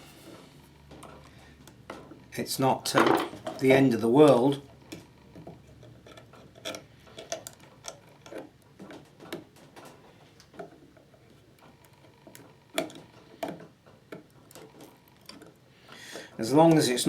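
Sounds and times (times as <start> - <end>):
clicks and taps of tools: 12.3 - 16.9.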